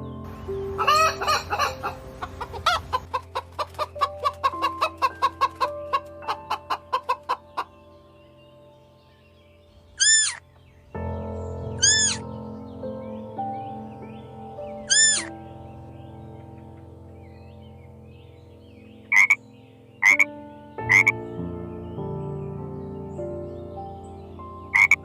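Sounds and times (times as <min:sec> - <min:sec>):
background music: 0:00.0 - 0:25.0
chicken clucking: 0:00.8 - 0:07.7.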